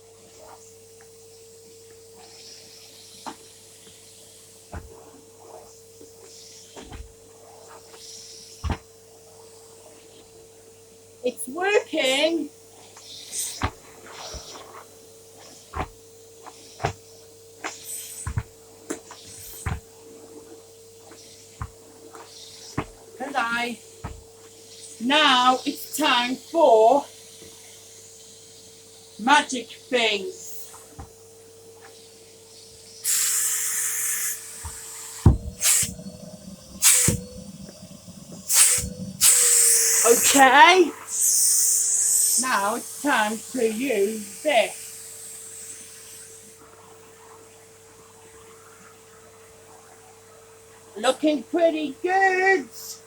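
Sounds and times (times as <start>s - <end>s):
faint steady hum: 0.0s - 53.0s
soft thump: 4.7s - 5.0s, 8.6s - 8.9s, 15.8s - 16.0s, 18.2s - 18.6s, 19.6s - 19.9s, 24.0s - 24.3s, 34.6s - 36.0s, 36.8s - 37.4s
hissing spray bursts: 13.0s - 31.0s, 31.9s - 46.6s.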